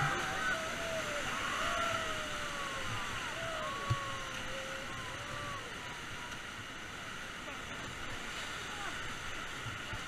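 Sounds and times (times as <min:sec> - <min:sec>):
river water rushing: 0:00.0 - 0:10.0.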